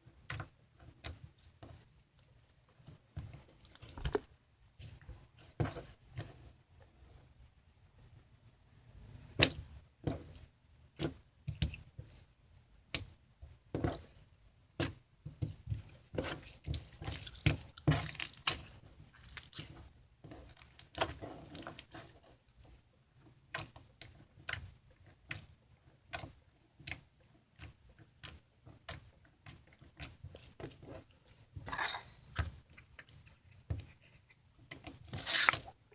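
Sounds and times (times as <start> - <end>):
slime squelching and clicking: 0.2 - 5.5, 14.7 - 35.8.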